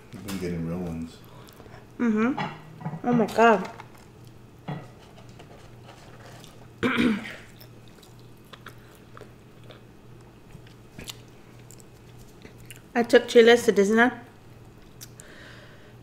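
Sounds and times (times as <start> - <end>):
faint steady hum: 0.0 - 16.0
person chewing food: 0.9 - 2.0, 5.2 - 6.8, 7.4 - 12.9, 14.6 - 15.4.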